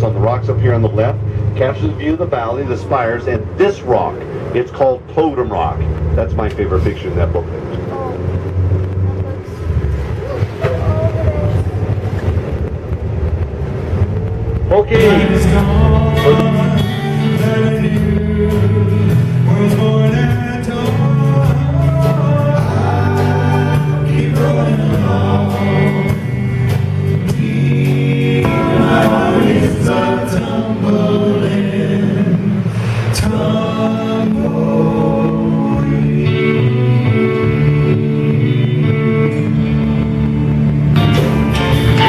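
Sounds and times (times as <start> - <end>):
vocal song: 14.8 - 39.8.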